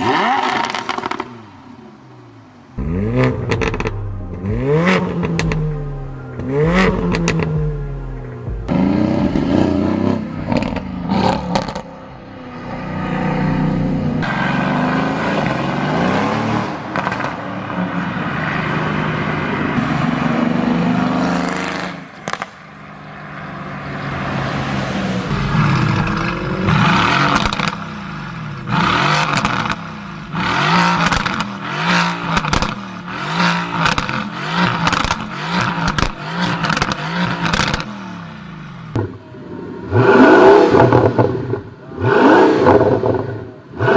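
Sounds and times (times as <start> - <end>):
sports car exhausts revving: 0.0 - 1.7, 2.7 - 17.8, 25.2 - 43.9
exhaust crackles and pops: 3.4 - 4.1, 22.2 - 22.6, 25.4 - 32.8, 33.8 - 37.9.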